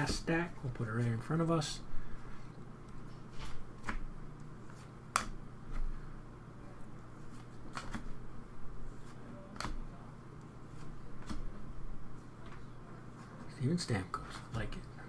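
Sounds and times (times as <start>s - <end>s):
low steady hum: 0.0s - 15.0s
card snapping flicks: 5.1s - 5.4s, 7.7s - 8.1s.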